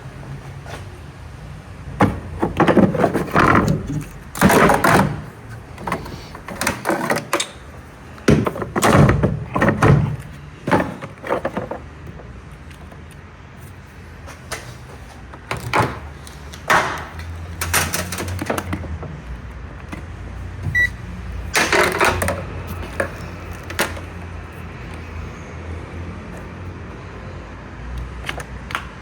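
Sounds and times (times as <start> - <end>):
knocks and rattles: 1.9 - 12.3, 15.4 - 20.8, 21.5 - 24.1.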